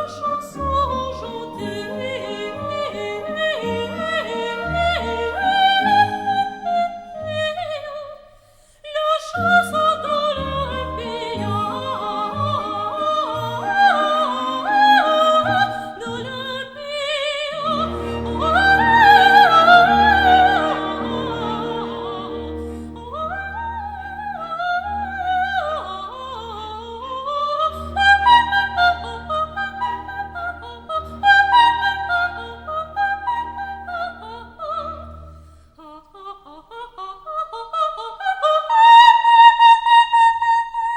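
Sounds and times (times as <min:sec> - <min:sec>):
person singing operatically: 0:00.0 - 0:07.9, 0:09.0 - 0:29.8
instrumental accompaniment: 0:17.6 - 0:24.3.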